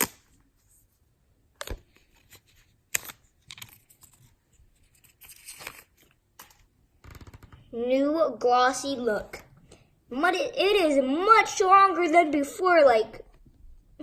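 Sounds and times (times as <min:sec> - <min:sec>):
papery rustle: 0:02.0 - 0:06.1.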